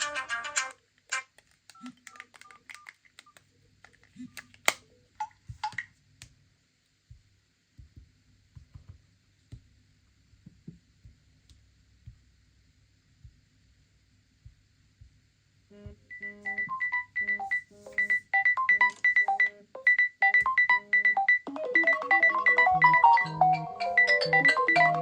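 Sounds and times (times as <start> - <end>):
phone keypad beeps: 16.1 - 25.0
sharp clicks and beeps: 16.1 - 25.0.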